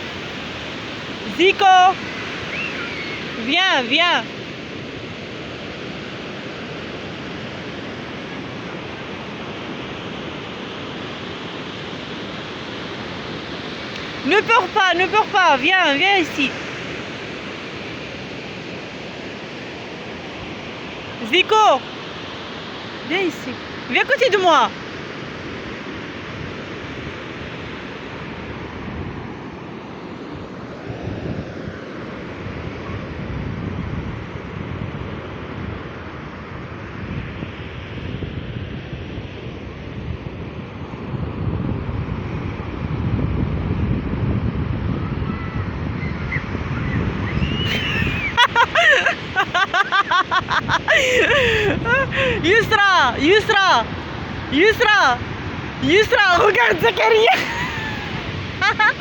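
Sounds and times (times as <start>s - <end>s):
sea surf rushing: 0.0s - 59.0s
wind buffeting microphone: 25.1s - 59.0s.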